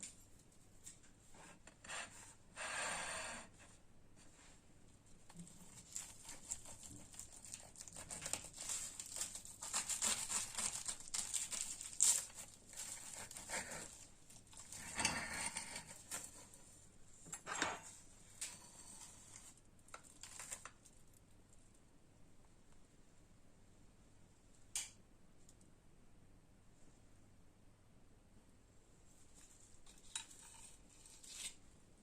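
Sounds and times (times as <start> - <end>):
dry crackling and crinkling: 5.3 - 16.6, 18.3 - 21.6.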